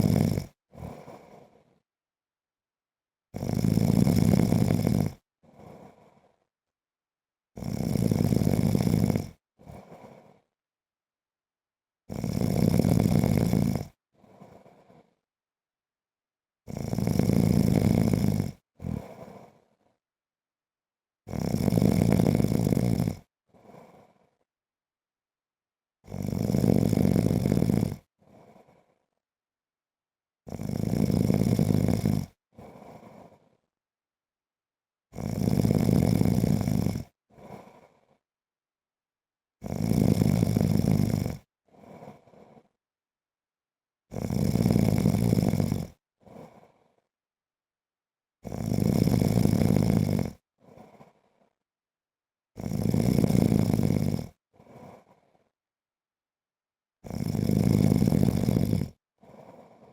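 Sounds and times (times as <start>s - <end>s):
man snoring: 0.0s - 1.8s, 3.3s - 6.4s, 7.6s - 10.5s, 12.1s - 15.2s, 16.6s - 20.0s, 21.3s - 24.5s, 26.0s - 29.1s, 30.5s - 33.7s, 35.1s - 38.2s, 39.6s - 42.8s, 44.1s - 47.1s, 48.4s - 51.6s, 52.6s - 55.5s, 57.0s - 59.9s
soft breath: 0.0s - 1.9s, 5.4s - 6.6s, 9.6s - 10.6s, 14.1s - 15.3s, 18.9s - 20.0s, 23.5s - 24.5s, 28.2s - 29.2s, 32.6s - 33.7s, 37.3s - 38.3s, 41.7s - 42.8s, 46.2s - 47.2s, 50.6s - 51.6s, 54.6s - 55.6s, 59.2s - 59.9s.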